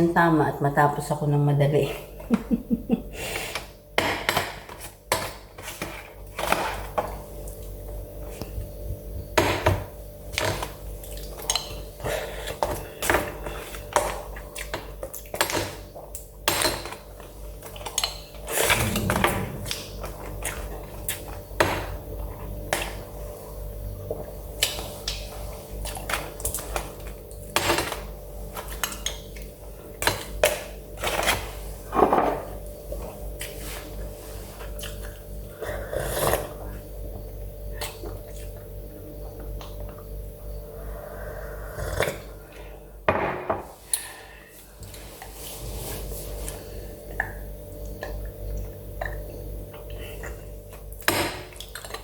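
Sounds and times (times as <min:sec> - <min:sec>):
steady low hum: 0:18.3 - 0:24.5.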